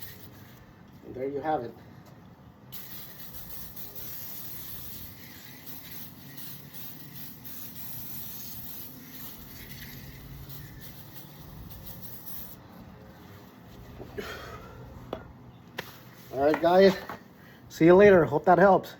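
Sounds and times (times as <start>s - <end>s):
aerosol can spraying hiss: 0.0s - 0.6s, 2.8s - 12.7s.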